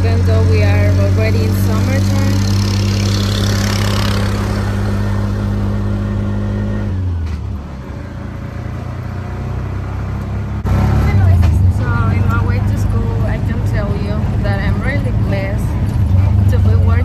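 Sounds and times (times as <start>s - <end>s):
small motorcycle engine running: 0.0s - 17.0s.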